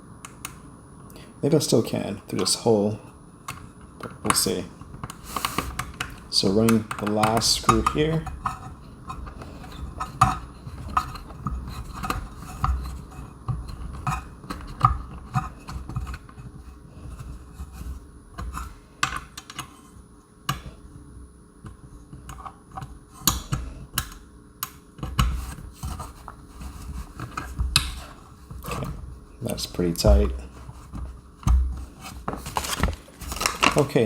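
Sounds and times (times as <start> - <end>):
handling rumble: 25.3 - 34.0.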